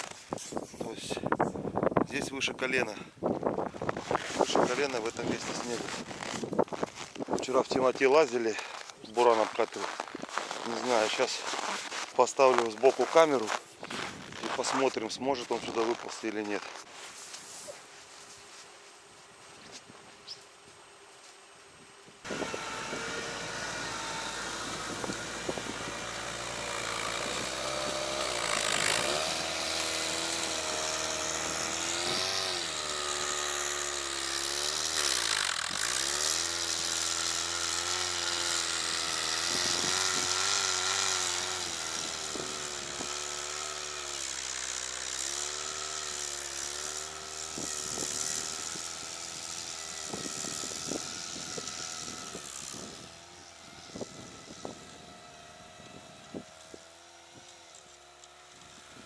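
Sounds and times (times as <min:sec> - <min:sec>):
vehicle engine revving hard: 0:22.3 - 0:48.7.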